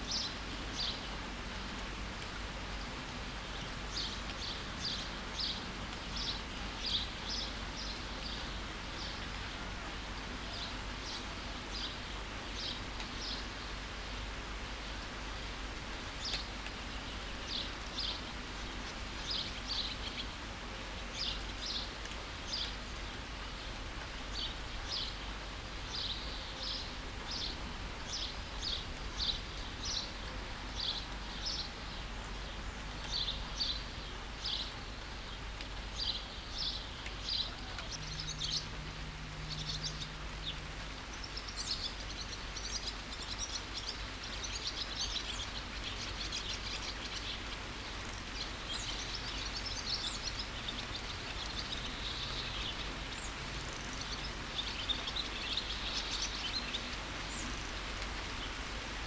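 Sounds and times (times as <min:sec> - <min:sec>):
songbirds chirping: 0:00.0 - 0:59.0
steady rain hiss: 0:00.0 - 0:59.0.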